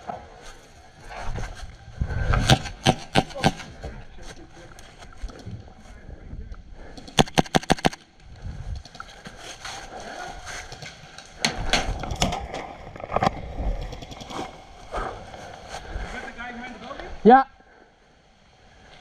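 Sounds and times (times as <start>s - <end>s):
airsoft rifle shots: 2.5s - 3.7s, 7.1s - 8.0s.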